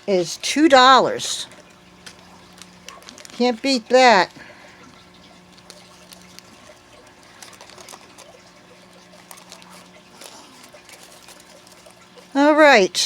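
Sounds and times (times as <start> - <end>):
faint steady hum: 0.0 - 13.0
jewelry clicking and rustling: 2.0 - 3.6, 7.2 - 8.4.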